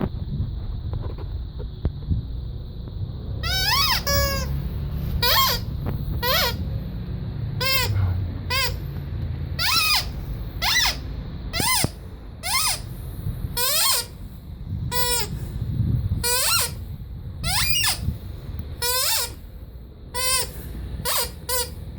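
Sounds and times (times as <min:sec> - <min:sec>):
low rumble: 0:00.0 - 0:18.8
rubber squeaky toy squeaking: 0:03.4 - 0:06.7, 0:07.6 - 0:14.2, 0:14.9 - 0:15.4, 0:16.2 - 0:19.5, 0:20.1 - 0:21.9.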